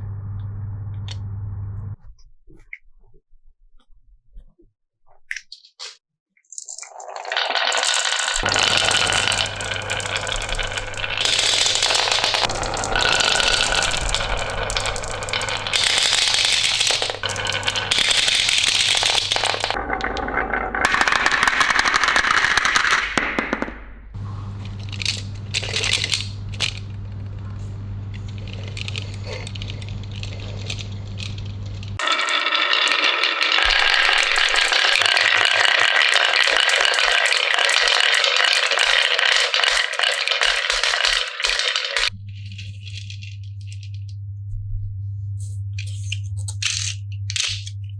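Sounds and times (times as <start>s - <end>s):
low hum: 0.0s - 2.0s, 24.2s - 32.0s
marbles clicking and clattering: 6.6s - 23.0s, 24.2s - 42.2s, 45.8s - 47.8s
marbles rolling and rattling: 6.6s - 23.0s, 24.2s - 42.2s, 45.8s - 47.8s.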